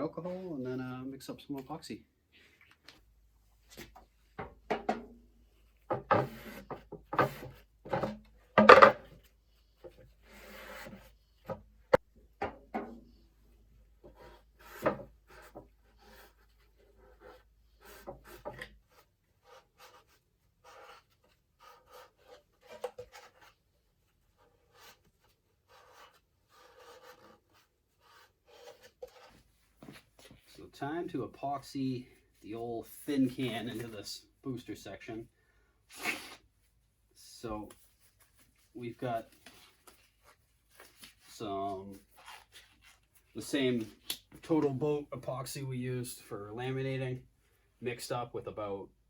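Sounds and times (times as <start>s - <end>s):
cloth rubbing and scraping: 37.6s - 43.9s.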